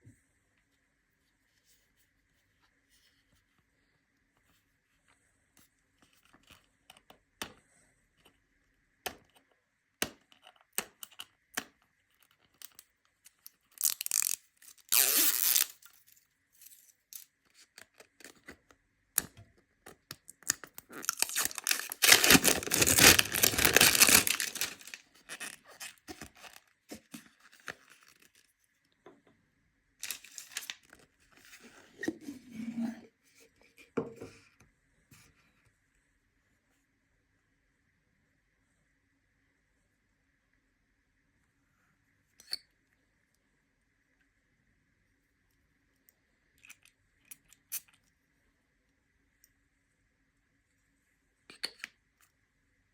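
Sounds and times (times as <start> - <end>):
packaging tearing and crinkling: 13.7 - 16.0, 20.4 - 28.4, 30.0 - 30.9.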